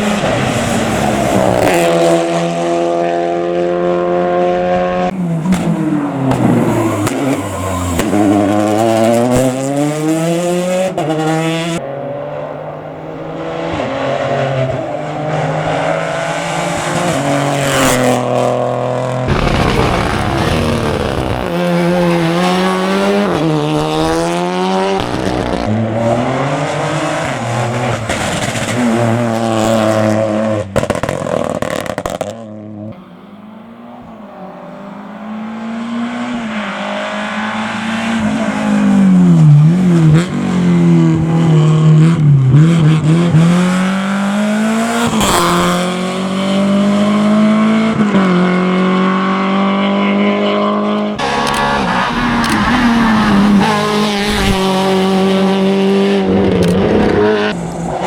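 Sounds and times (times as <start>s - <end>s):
rally car engines revving: 0.0s - 58.0s
tyre squeal: 5.1s - 8.7s.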